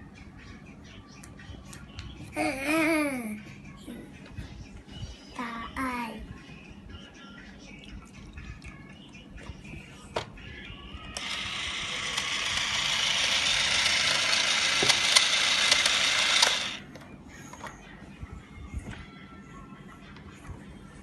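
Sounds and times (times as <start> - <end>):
toy motor whirring: 11.1 - 16.8.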